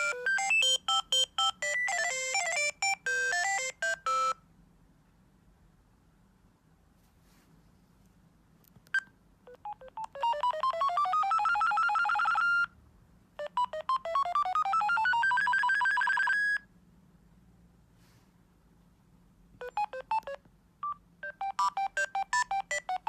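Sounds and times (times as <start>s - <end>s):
phone ringtone electronic notes: 0.0s - 4.4s, 9.5s - 12.7s, 13.4s - 16.7s, 19.6s - 23.0s.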